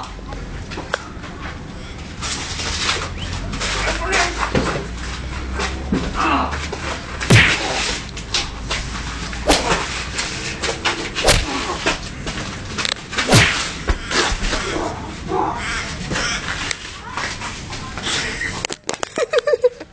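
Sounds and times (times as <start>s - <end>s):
punch sound effects: 7.3s - 7.9s, 9.5s - 9.8s, 11.2s - 11.6s, 13.3s - 13.6s.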